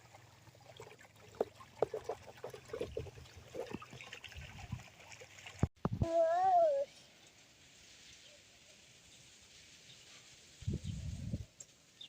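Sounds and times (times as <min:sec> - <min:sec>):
water trickling and dripping: 0:00.0 - 0:05.7.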